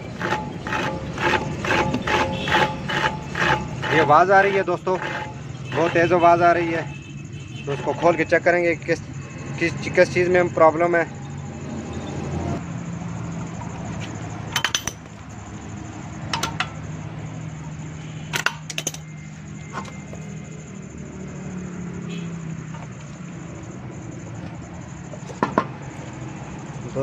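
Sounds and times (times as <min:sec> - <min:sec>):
metal hand tools clinking: 0:14.4 - 0:15.3, 0:16.3 - 0:16.8, 0:18.3 - 0:19.9.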